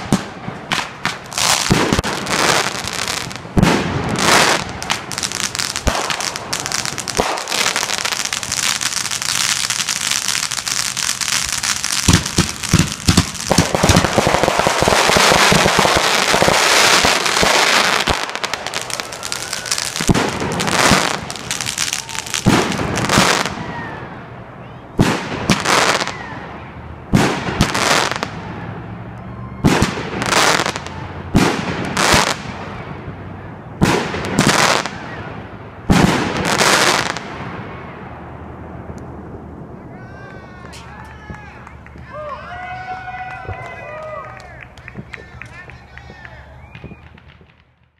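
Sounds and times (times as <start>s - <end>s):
fireworks crackling and banging: 0.0s - 28.7s, 29.6s - 47.9s
firework whistles: 4.1s - 24.0s, 46.4s - 47.6s.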